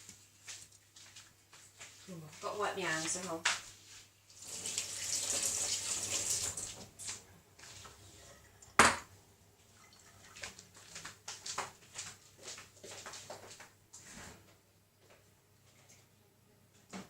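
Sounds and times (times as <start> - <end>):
kitchen tap running: 4.3 - 7.2.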